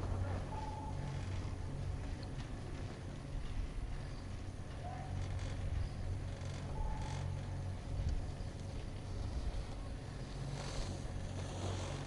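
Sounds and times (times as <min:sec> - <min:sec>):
chairlift running: 0:00.0 - 0:12.0
wind rumble: 0:00.0 - 0:12.0.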